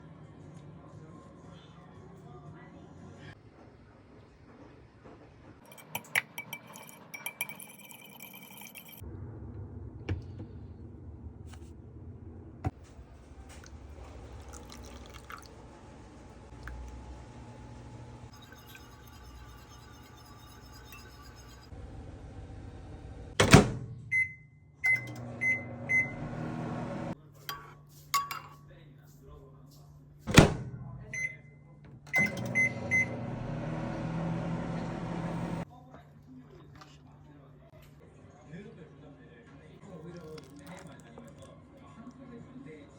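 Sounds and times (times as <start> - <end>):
microwave oven humming: 9.0 - 27.2, 32.0 - 35.6
microwave door thud: 23.4 - 24.0, 30.3 - 30.8.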